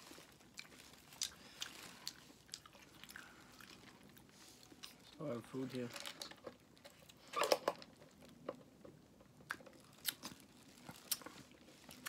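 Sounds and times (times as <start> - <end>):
chewing crunchy food: 0.0 - 5.9, 7.9 - 12.0.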